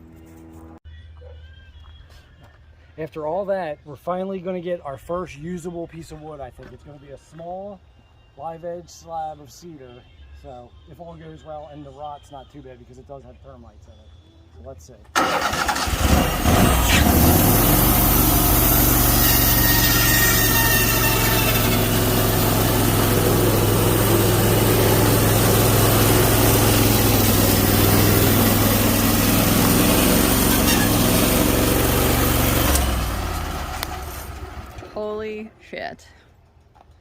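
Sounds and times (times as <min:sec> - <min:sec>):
sawmill gasoline engine running: 0:15.2 - 0:35.0.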